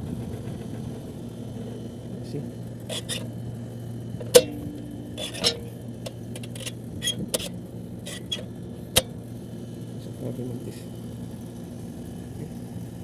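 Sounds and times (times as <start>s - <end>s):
air conditioner humming: 1.5s - 10.8s
sharp clicks and knocks: 2.9s - 3.3s, 4.2s - 7.5s.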